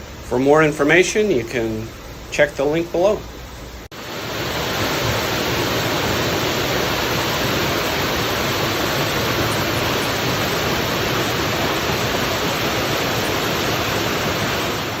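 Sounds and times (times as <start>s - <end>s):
waterfall rushing: 3.9s - 15.0s.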